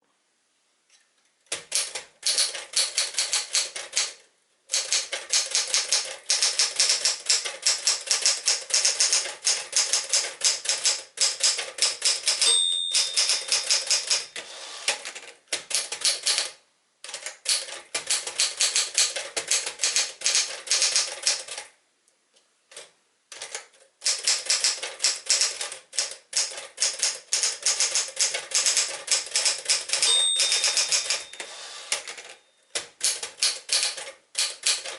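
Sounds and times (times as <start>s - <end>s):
typewriter keystrokes: 1.5s - 21.7s, 22.7s - 34.9s
typewriter bell ding: 11.9s - 14.4s, 29.4s - 31.6s.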